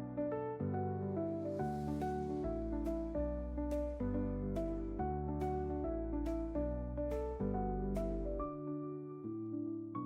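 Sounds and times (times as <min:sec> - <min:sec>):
gentle keyboard chords: 0:00.0 - 0:10.0.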